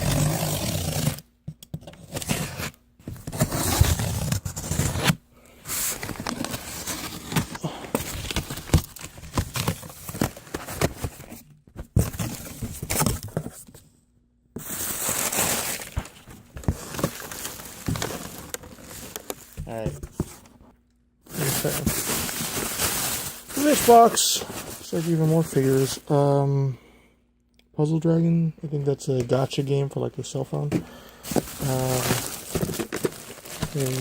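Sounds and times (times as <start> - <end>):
packaging rustling and crinkling: 2.0 - 13.7, 14.6 - 20.7, 21.3 - 26.1, 30.5 - 34.0.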